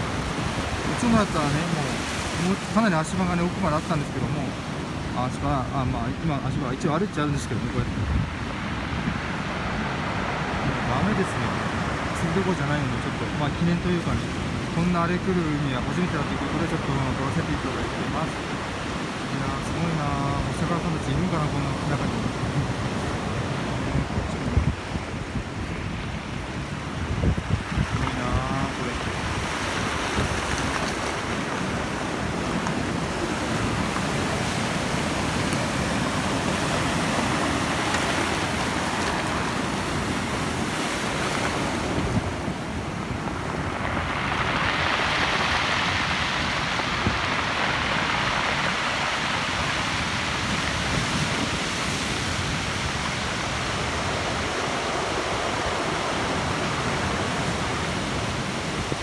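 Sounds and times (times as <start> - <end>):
storm waves breaking: 0.0 - 59.0
wind on microphone: 7.5 - 12.4, 20.2 - 59.0.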